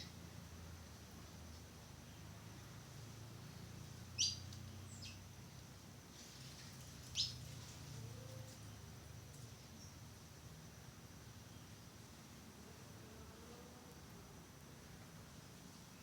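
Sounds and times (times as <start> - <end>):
small bird chirping: 4.2 - 5.2, 7.1 - 7.5.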